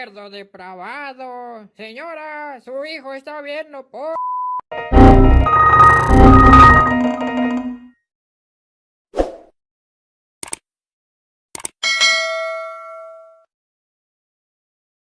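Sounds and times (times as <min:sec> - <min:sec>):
quick clicks: 0:10.4 - 0:10.6, 0:11.6 - 0:11.8
bright bell-like ding: 0:11.8 - 0:13.5.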